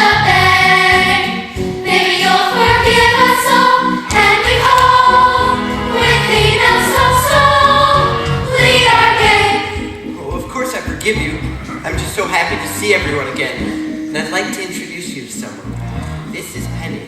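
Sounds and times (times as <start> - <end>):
chorus of young voices singing: 0.0 - 10.0
instrumental accompaniment: 0.0 - 17.0.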